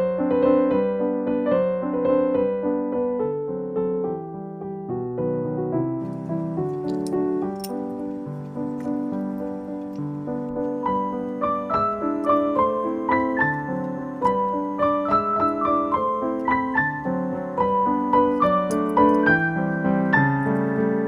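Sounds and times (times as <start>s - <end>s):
calm piano music: 0.0s - 21.0s.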